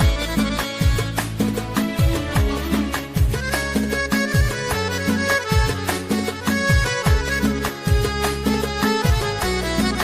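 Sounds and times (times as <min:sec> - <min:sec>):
melodic instruments: 0:00.0 - 0:10.0
deep drum beat: 0:00.8 - 0:05.8.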